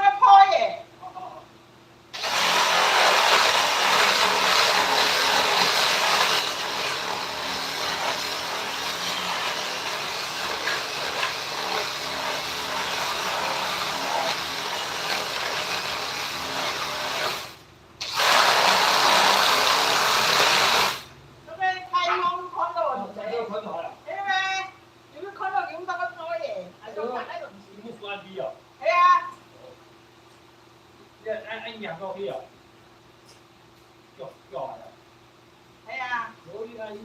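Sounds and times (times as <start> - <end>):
electric power tool running: 2.1 - 21.1.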